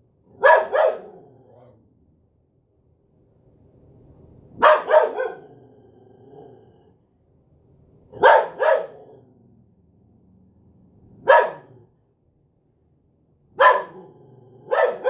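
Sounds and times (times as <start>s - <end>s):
dog barking: 0.3s - 1.7s, 4.6s - 5.6s, 8.2s - 9.2s, 11.2s - 11.9s, 13.6s - 15.0s.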